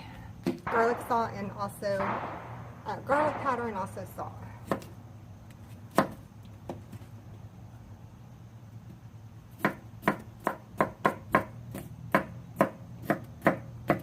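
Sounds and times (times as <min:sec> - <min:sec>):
knife chopping onion on mat: 0:04.6 - 0:04.9, 0:05.8 - 0:07.0, 0:09.6 - 0:14.0.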